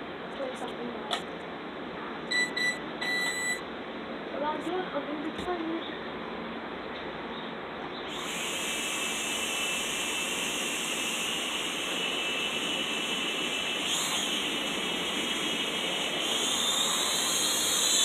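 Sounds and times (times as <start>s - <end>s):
toy drone propellers whirring: 8.1s - 18.0s.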